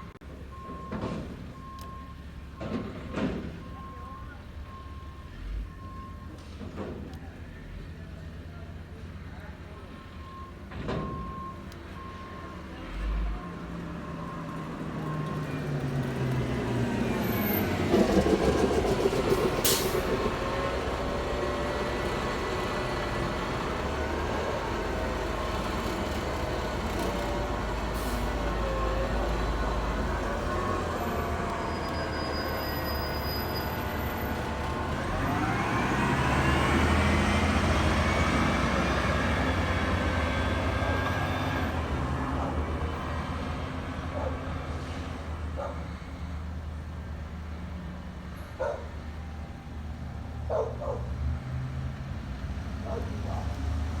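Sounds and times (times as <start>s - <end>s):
garbage truck engine revving: 12.9s - 44.8s.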